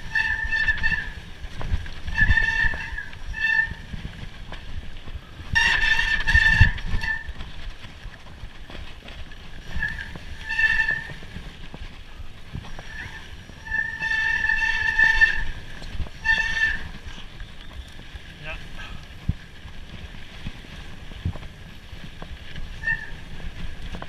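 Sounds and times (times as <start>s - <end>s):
bicycle disc brakes squealing: 0.0s - 1.3s, 2.0s - 3.9s, 5.5s - 7.4s, 9.6s - 11.4s, 12.6s - 18.2s, 22.7s - 24.0s
low rumble of riding: 0.0s - 24.0s.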